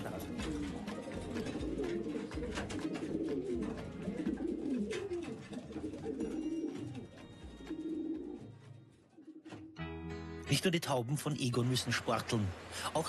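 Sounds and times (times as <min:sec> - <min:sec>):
pigeons cooing: 0:00.0 - 0:09.8.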